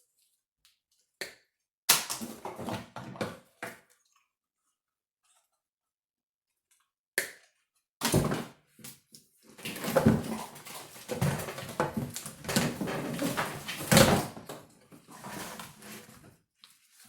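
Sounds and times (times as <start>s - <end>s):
wires and plastic connectors rustling: 9.5s - 17.0s.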